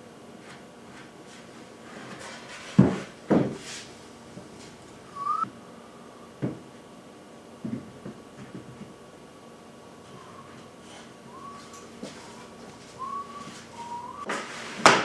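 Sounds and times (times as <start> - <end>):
brief rising high note: 5.1 - 5.5.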